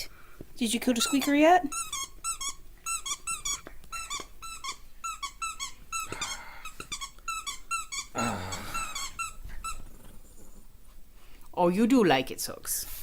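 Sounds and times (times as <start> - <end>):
squeaky dog toy squeaking: 0.9 - 8.2, 8.8 - 9.8.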